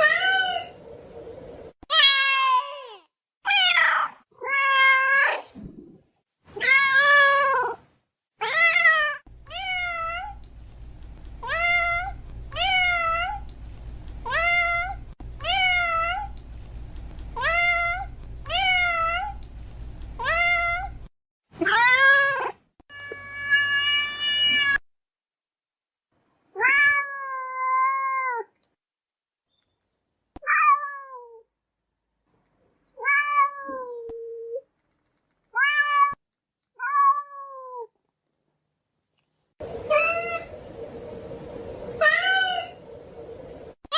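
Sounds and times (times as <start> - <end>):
cat meowing: 8.4 - 10.4, 11.4 - 13.5, 14.2 - 16.3, 17.4 - 19.4, 20.2 - 21.0, 39.9 - 40.5, 42.0 - 42.8
low steady hum: 9.3 - 21.1, 39.6 - 43.8.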